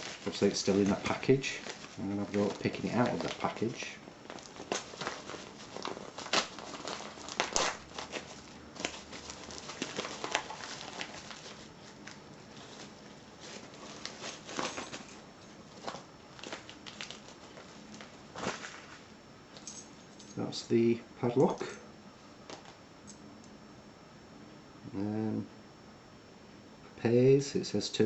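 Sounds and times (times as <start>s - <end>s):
packaging crinkling and tearing: 0.0s - 19.1s.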